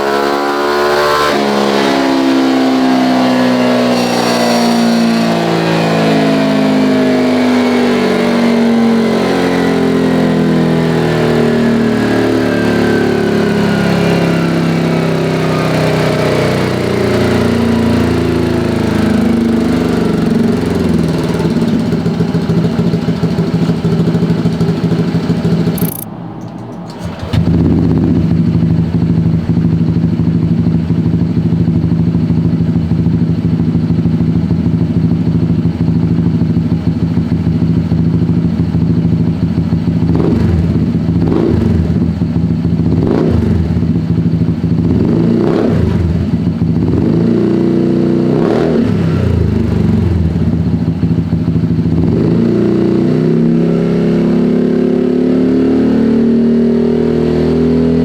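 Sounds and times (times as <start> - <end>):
scooter engine idling: 20.1 - 41.2, 49.6 - 52.0
scooter throttle blips: 25.8 - 26.1.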